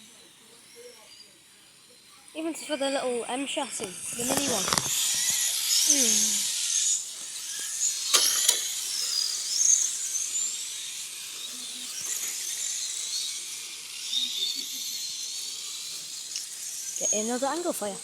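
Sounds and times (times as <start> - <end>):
electric rc car motors whining: 0.0 - 18.0
sharp clicks: 8.1 - 8.7.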